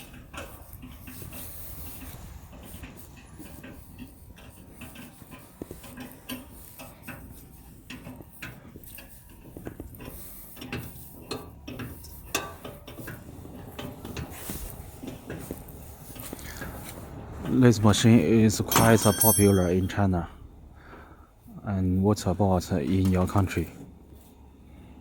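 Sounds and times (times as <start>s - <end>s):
metallic clinks and rattles: 18.6s - 20.1s.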